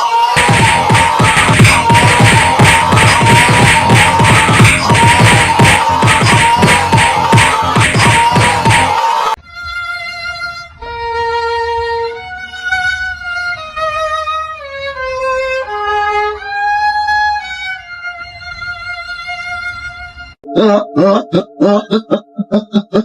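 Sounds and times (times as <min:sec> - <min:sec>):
solo violin slow melody: 0:09.4 - 0:20.4.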